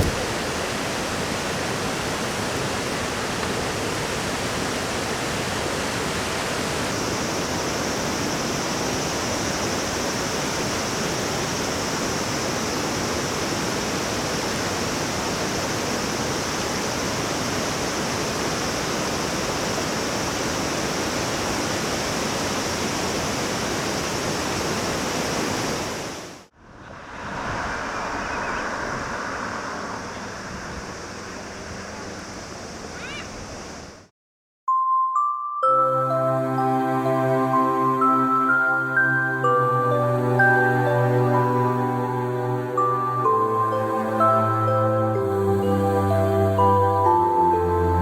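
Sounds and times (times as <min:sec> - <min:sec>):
mountain stream rushing: 0:00.0 - 0:33.9.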